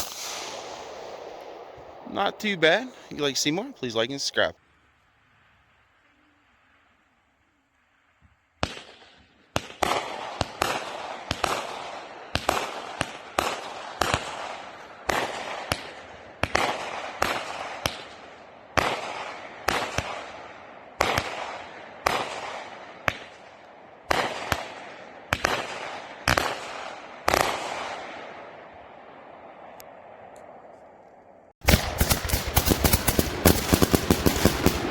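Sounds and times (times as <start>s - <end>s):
fireworks bangs with hiss: 0.0s - 3.7s, 31.6s - 34.9s.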